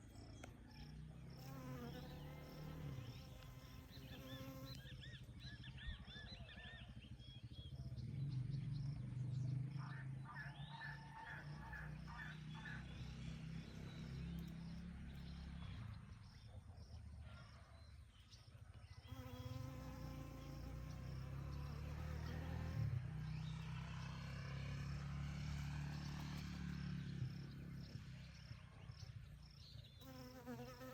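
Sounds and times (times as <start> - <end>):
bees buzzing: 1.4 - 4.8, 30.0 - 30.9.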